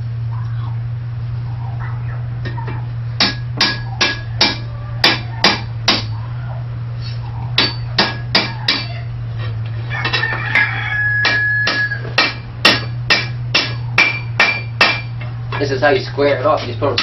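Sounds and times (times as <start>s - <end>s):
steady low hum: 0.0s - 17.0s
hammer striking steel on anvil: 3.2s - 6.2s, 7.5s - 9.0s, 10.0s - 15.7s, 16.8s - 17.0s.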